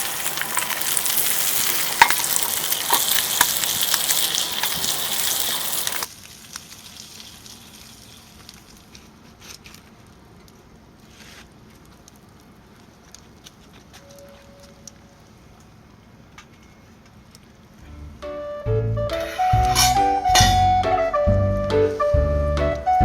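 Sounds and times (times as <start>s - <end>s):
pork sizzling in a skillet: 0.0s - 9.0s, 19.2s - 20.6s
faint crackles and clicks: 0.0s - 17.6s.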